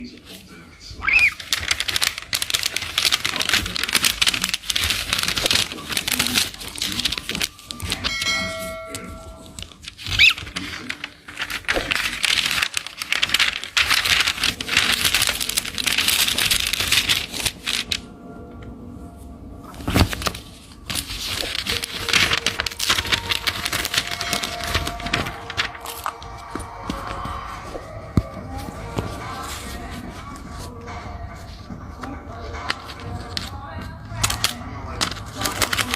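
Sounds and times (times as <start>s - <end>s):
paper rustling and tearing: 0.0s - 18.1s, 19.7s - 35.9s
ringing chime-like tone: 8.0s - 9.5s.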